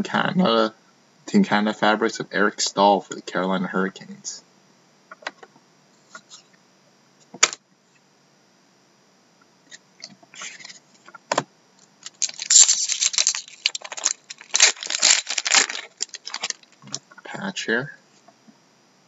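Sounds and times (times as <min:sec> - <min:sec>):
plastic wrapping crinkling: 0:12.0 - 0:17.0.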